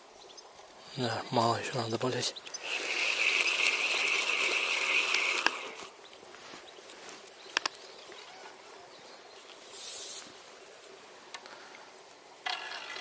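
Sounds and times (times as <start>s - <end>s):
steady background hiss: 0.0s - 13.0s
fishing tackle clicking: 2.6s - 5.9s.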